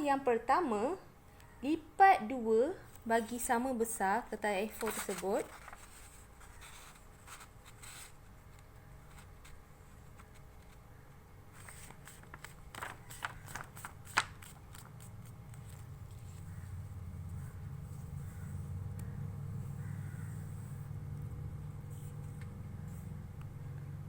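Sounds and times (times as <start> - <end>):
paper rustling and crinkling: 4.5 - 10.9, 11.5 - 16.7.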